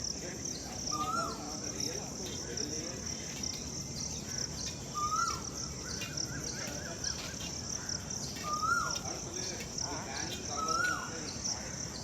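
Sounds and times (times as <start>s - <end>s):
insects chirring: 0.0s - 12.0s
bird whistled call: 0.9s - 1.4s, 4.9s - 5.5s, 8.4s - 9.0s, 10.6s - 11.1s.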